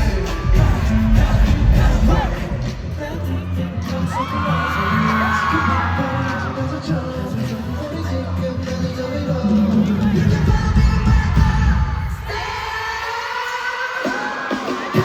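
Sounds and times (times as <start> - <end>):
heavy bass: 0.0 - 12.5
live pop band with singing: 0.0 - 15.0
audience screaming: 3.7 - 6.9.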